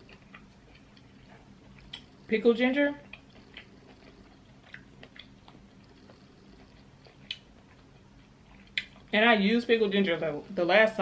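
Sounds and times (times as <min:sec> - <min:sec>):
person chewing: 0:00.0 - 0:09.2
wet mouth clicks and smacks: 0:03.1 - 0:05.8, 0:07.0 - 0:07.6, 0:08.6 - 0:09.1.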